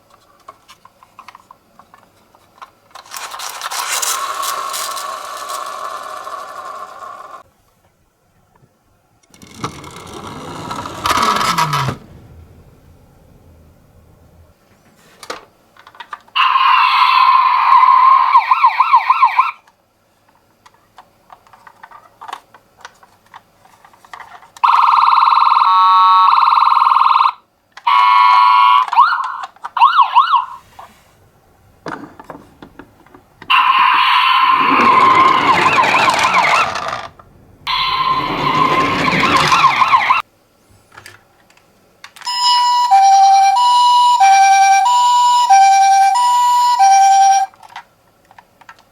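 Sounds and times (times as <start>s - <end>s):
toy electronic sirens: 3.3s - 7.4s, 16.4s - 19.6s, 24.6s - 30.6s, 33.5s - 37.1s, 37.7s - 40.2s, 42.2s - 47.6s
two-note alternating siren: 33.5s - 36.7s, 37.6s - 40.2s, 42.3s - 47.5s.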